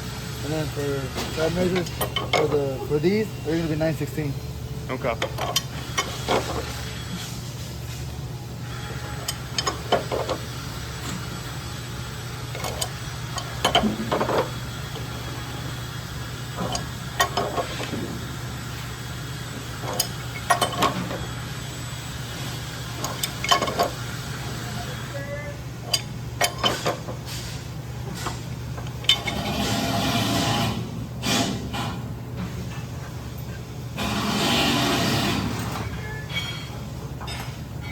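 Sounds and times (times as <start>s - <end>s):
steady low hum: 0.0s - 37.9s
metal tools clinking and knocking: 1.2s - 3.2s, 5.0s - 6.6s, 9.2s - 10.4s, 12.5s - 14.5s, 16.6s - 17.9s, 19.8s - 21.2s, 23.0s - 24.0s, 25.8s - 27.1s, 28.1s - 29.5s, 35.6s - 37.9s.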